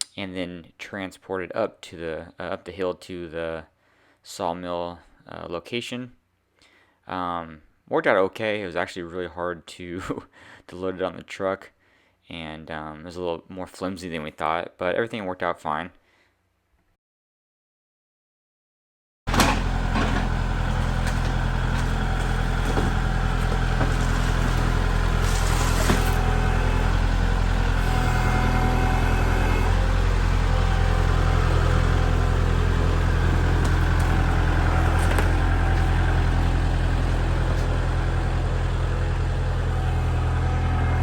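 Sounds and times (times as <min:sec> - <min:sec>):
clanks and rattles: 0:19.3 - 0:28.4, 0:32.2 - 0:39.1
truck engine running: 0:19.3 - 0:41.0.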